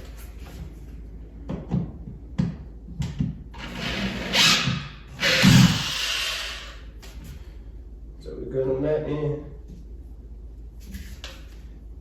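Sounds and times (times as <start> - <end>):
rasping burst: 3.7 - 6.8.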